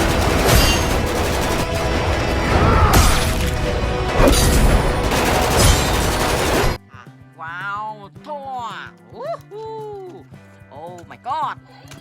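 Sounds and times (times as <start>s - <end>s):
explosion-like crashing effects: 0.0s - 6.8s
loud music: 0.0s - 6.8s.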